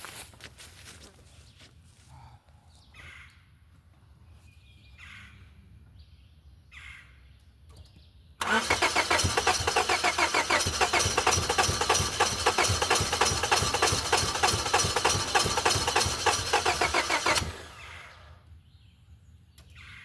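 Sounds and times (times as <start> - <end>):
car engine cranking: 8.4 - 18.1.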